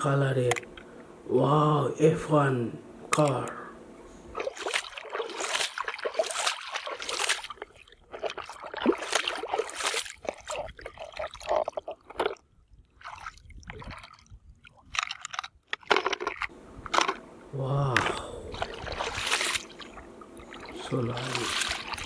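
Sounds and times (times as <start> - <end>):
water trickling and splashing: 4.4 - 16.5, 17.8 - 22.0.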